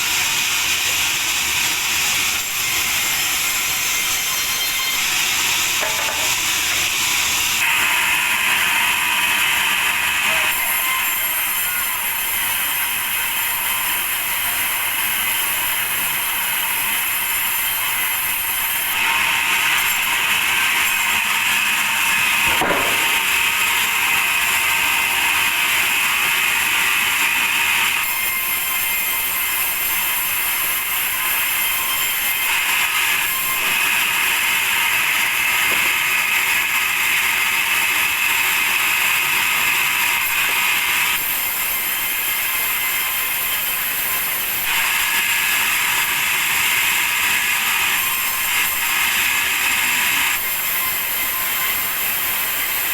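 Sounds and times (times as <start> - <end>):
sawmill saw cutting wood: 0.0 - 52.9
single knock: 22.5 - 23.3.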